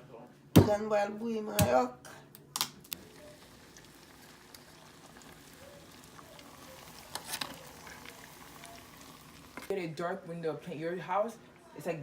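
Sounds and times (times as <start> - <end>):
plantains sizzling in hot oil: 3.0 - 9.8.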